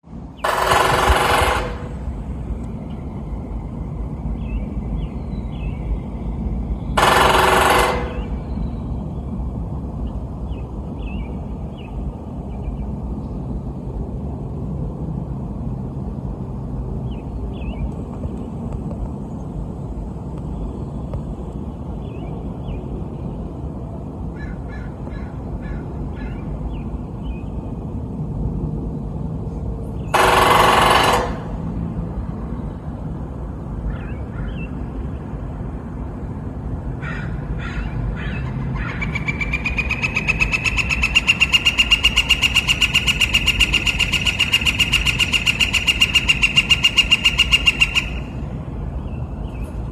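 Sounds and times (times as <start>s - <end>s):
steady low rumble: 0.0s - 49.9s
loud burst: 0.4s - 2.1s, 7.0s - 8.4s.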